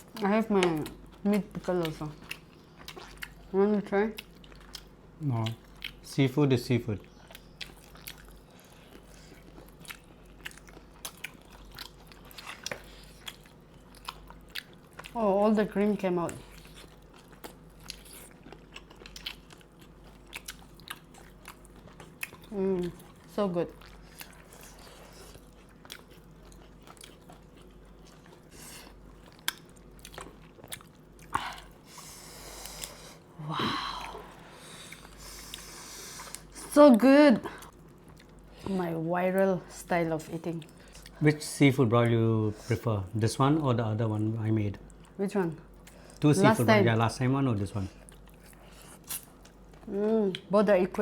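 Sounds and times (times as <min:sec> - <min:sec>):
chewing and crab shell crunching: 0:00.0 - 0:06.0, 0:07.0 - 0:33.3, 0:34.0 - 0:38.7, 0:47.8 - 0:50.5.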